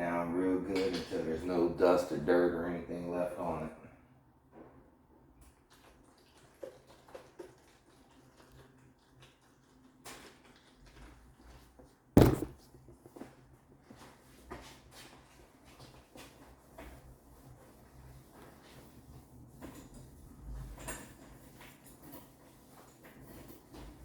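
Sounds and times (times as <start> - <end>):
loud knock: 12.2 - 12.6.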